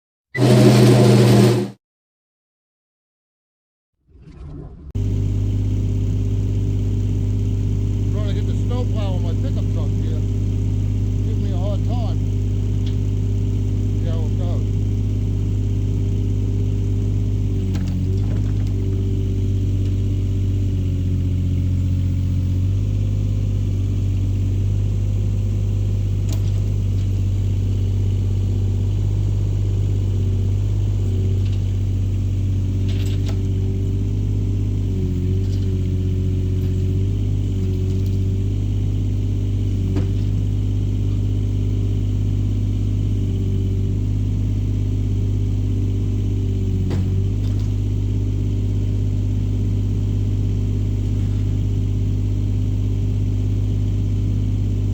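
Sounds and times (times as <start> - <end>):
large engine running: 0.4 - 1.8, 5.0 - 54.9
sharp clicks and knocks: 17.5 - 20.4, 28.9 - 33.9.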